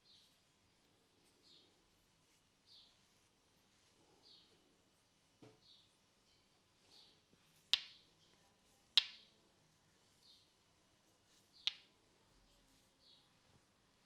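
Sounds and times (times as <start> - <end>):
faint bird chirping: 0.0 - 13.5
hands snapping during massage: 7.7 - 8.0, 9.0 - 9.3, 11.6 - 11.9.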